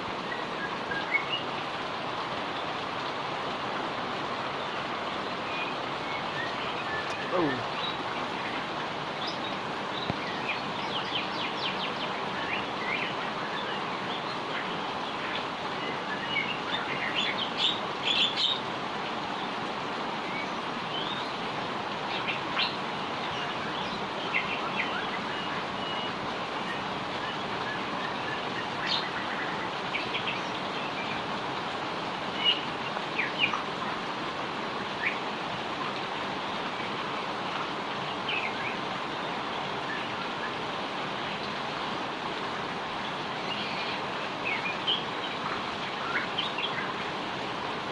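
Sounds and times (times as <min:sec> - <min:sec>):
small birds chirping: 0:00.0 - 0:21.4, 0:22.0 - 0:34.1, 0:42.8 - 0:47.2
rain falling: 0:00.0 - 0:47.9.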